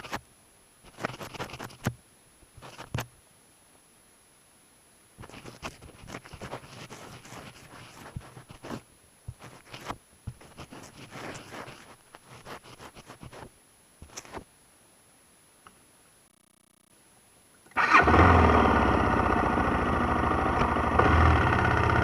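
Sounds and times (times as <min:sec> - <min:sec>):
rustling scraping and clicking: 0:00.0 - 0:00.2, 0:00.9 - 0:02.0, 0:02.6 - 0:03.1, 0:05.2 - 0:14.5.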